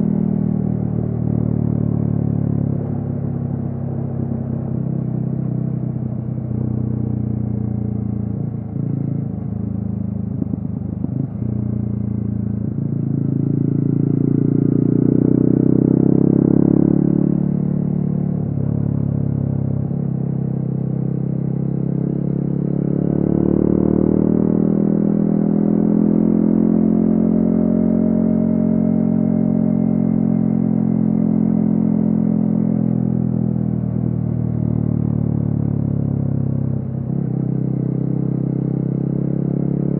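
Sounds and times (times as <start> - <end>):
motorcycle engine revving: 10.3 - 18.8, 21.0 - 34.6.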